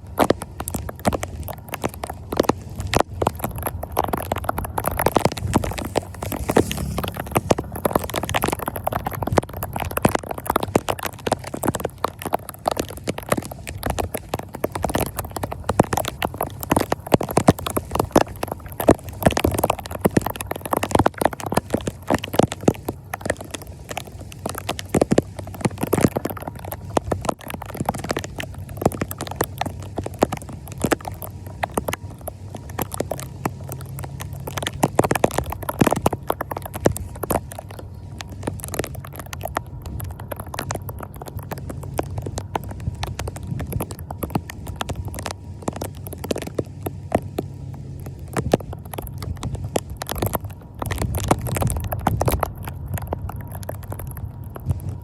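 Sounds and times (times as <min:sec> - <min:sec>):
low rumble: 0:01.8 - 0:14.1.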